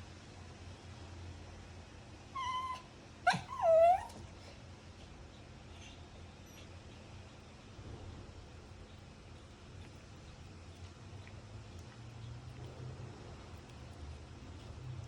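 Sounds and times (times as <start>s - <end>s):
dog whining: 2.3s - 4.3s.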